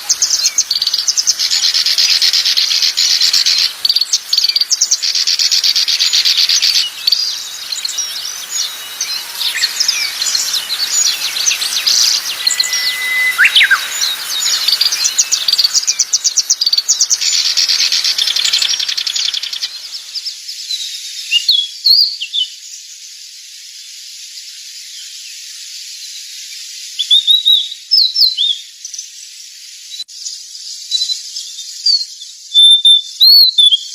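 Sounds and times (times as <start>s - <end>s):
bird whistle: 0.0s - 20.1s
songbirds chirping and trilling: 0.0s - 33.9s.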